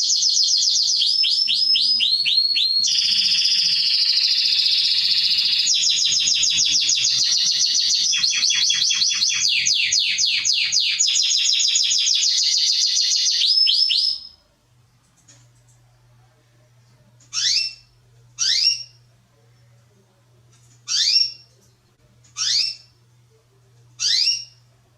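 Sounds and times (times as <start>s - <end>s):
canary singing trill: 0.0s - 14.4s, 17.3s - 19.1s, 20.9s - 21.5s, 22.4s - 23.0s, 24.0s - 24.6s
faint low hum: 0.4s - 24.9s.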